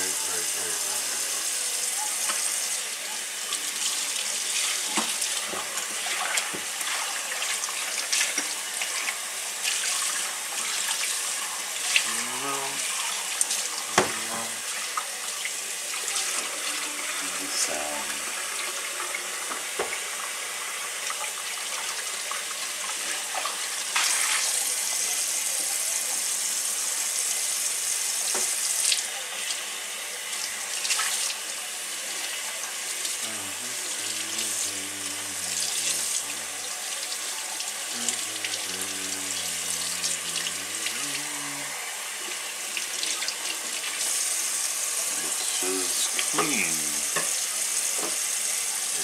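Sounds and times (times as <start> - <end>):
tap running into sink: 13.9 - 14.2, 19.5 - 20.0.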